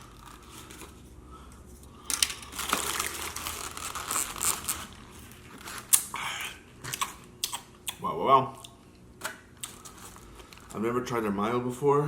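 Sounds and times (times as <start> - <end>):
food packaging crinkling and tearing: 0.0 - 1.0, 2.1 - 6.2, 9.2 - 10.9.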